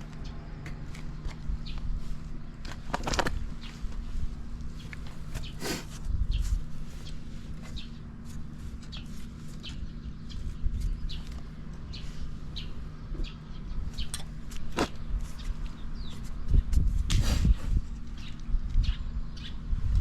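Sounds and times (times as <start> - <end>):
steady low hum: 0.0 - 20.0
small bird chirping: 4.7 - 20.0.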